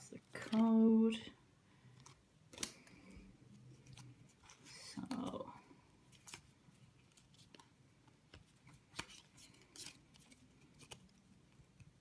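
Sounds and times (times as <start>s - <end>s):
trading cards rustling and clicking: 0.2s - 0.9s, 1.9s - 12.0s.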